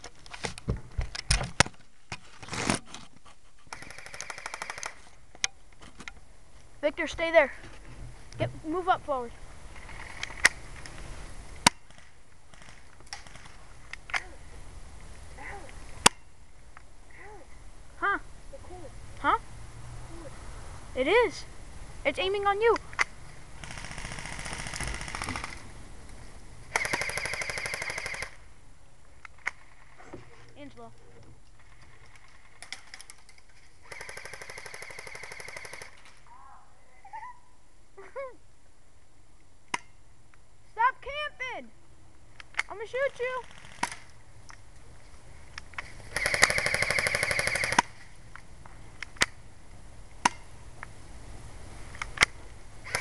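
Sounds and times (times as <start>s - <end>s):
airsoft gun firing bursts: 3.7s - 5.0s, 23.6s - 25.6s, 26.7s - 28.4s, 33.8s - 36.0s, 43.4s - 44.0s, 46.0s - 47.9s
airsoft gun shots: 26.7s - 28.4s, 46.1s - 47.9s.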